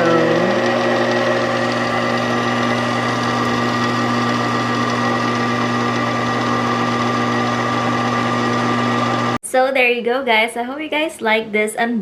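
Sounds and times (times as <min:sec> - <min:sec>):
stand mixer motor running: 0:00.0 - 0:09.4.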